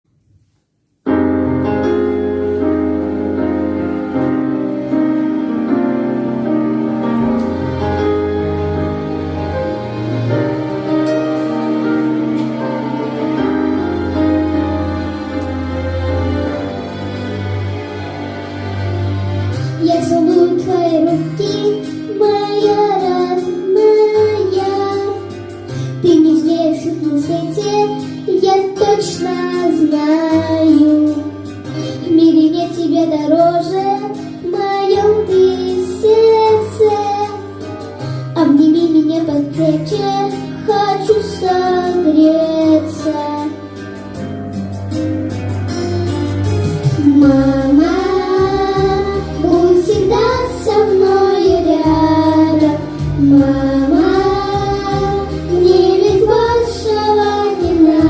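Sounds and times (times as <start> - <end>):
instrumental accompaniment: 0.4 - 58.0
sustained keyboard chords: 1.1 - 58.0
child singing a slow song: 19.8 - 25.4, 26.0 - 43.6, 47.0 - 58.0
bass line: 44.3 - 58.0.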